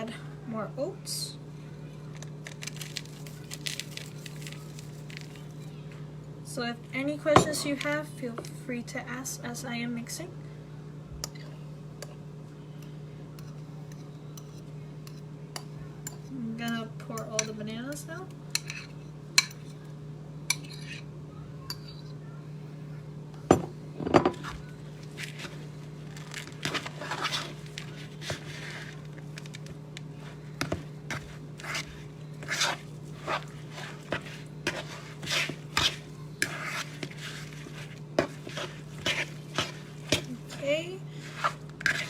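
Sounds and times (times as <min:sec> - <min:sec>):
spoon scraping a mixing bowl: 0:13.3 - 0:19.8, 0:20.5 - 0:21.1, 0:24.3 - 0:42.0.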